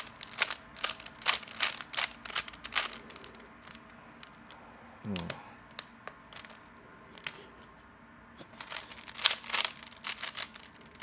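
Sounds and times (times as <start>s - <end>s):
puzzle cube clicking: 0.0s - 3.9s, 8.6s - 11.0s.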